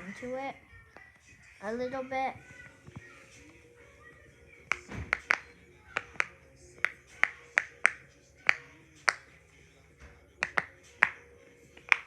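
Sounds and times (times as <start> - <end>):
pop-it toy bubbles clicking: 4.7 - 9.2, 10.4 - 11.2.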